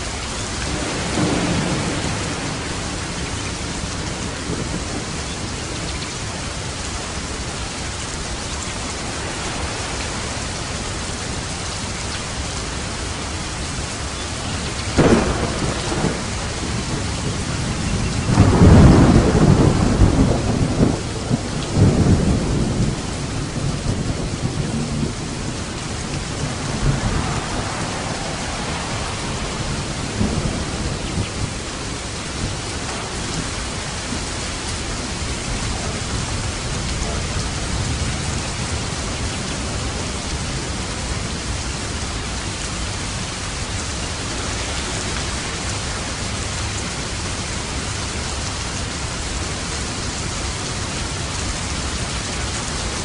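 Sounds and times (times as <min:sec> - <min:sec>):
low rolling thunder rumble: 0:00.0 - 0:53.0
steady rain: 0:00.0 - 0:53.0
sharp thunderclap: 0:00.7 - 0:03.2, 0:15.0 - 0:31.7.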